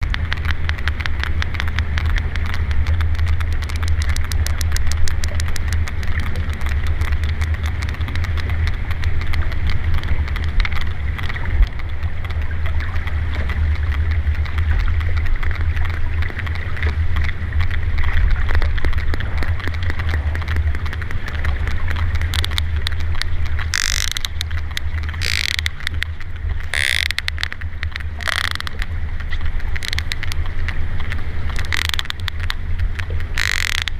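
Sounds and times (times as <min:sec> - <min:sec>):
low rumble: 0:00.0 - 0:33.9
whale clicks underwater: 0:00.0 - 0:33.9
short noise bursts: 0:22.2 - 0:28.9.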